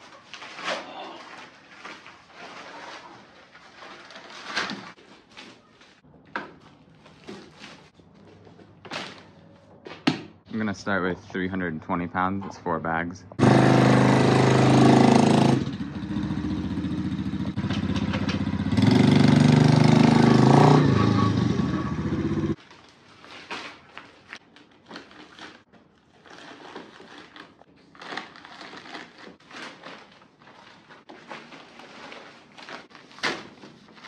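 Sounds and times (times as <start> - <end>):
four-wheeler engine revving: 13.4 - 22.6.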